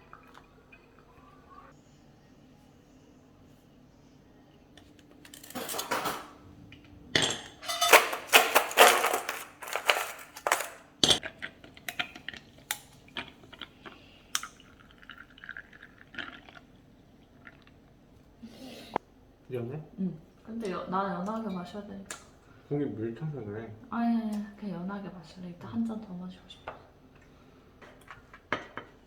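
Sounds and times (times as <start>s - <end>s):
dishes and cups clinking: 7.1s - 11.3s, 27.8s - 29.0s
liquid being poured: 11.2s - 18.0s.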